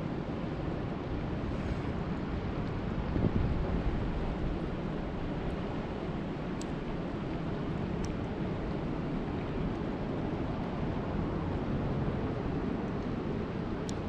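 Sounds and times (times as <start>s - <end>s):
wind rumble on microphone: 0.0s - 14.0s
faint ticks: 6.6s - 6.8s.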